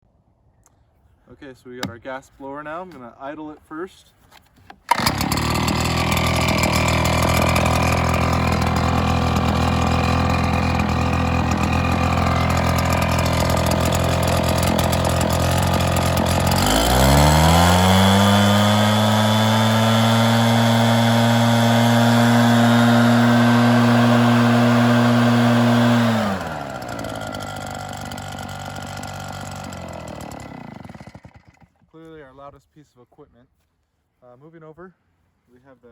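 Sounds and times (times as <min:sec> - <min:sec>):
leaf blower engine revving: 0:04.9 - 0:31.9.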